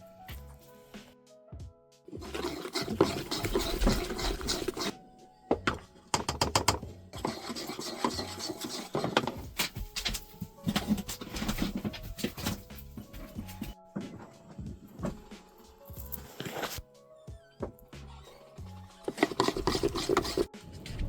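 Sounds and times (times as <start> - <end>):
soft background music: 0.0 - 21.0
rubbing and scraping: 2.1 - 5.0, 5.6 - 16.8, 17.9 - 21.0.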